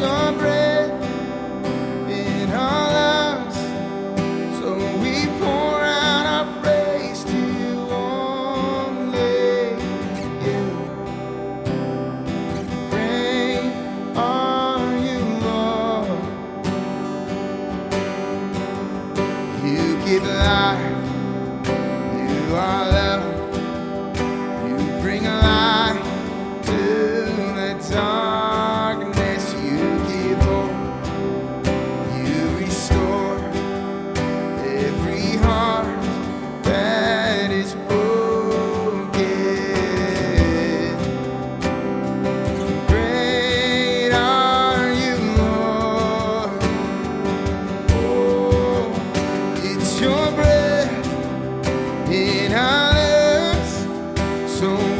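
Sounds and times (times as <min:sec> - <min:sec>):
strummed acoustic guitar: 0:00.0 - 0:54.9
wordless vocal line: 0:00.0 - 0:54.9
drums: 0:30.4 - 0:30.7, 0:40.4 - 0:40.7, 0:42.4 - 0:43.8, 0:45.4 - 0:46.0, 0:46.6 - 0:54.9.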